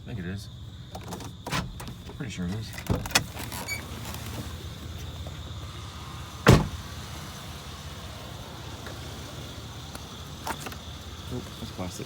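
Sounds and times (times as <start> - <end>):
vehicle engine idling: 0.0 - 12.0
loud thump: 6.5 - 6.8.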